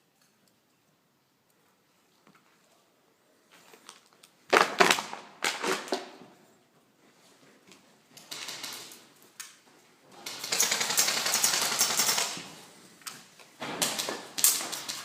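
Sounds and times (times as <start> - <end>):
airsoft gun firing a burst: 10.2 - 12.4.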